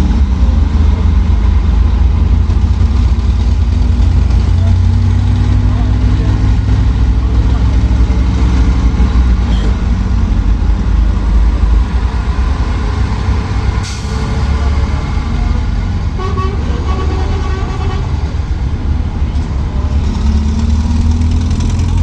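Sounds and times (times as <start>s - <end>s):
minibus engine rumbling: 0.0s - 22.0s
vehicle horn toots: 16.2s - 18.2s.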